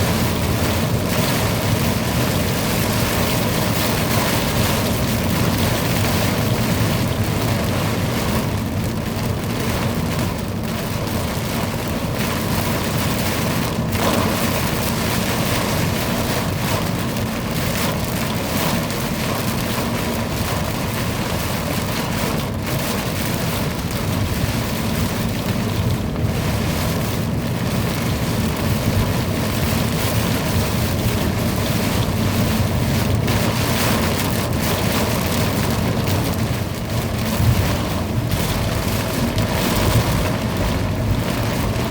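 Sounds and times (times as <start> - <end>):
dense rain hiss: 12.4 - 17.2
low thunder rumble: 13.6 - 17.2, 32.2 - 41.9.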